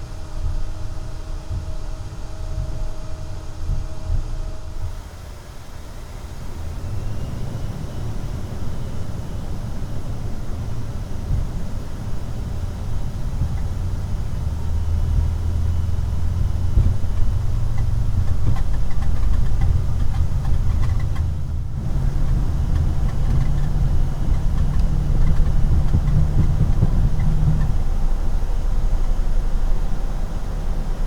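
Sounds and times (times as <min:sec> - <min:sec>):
jet airliner taking off: 0:05.8 - 0:13.3
light rattles: 0:12.6 - 0:30.5.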